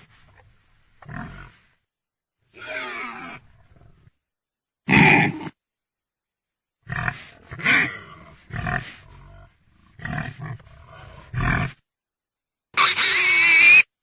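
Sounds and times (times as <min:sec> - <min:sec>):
pig grunting: 0:04.9 - 0:05.6, 0:06.9 - 0:11.8.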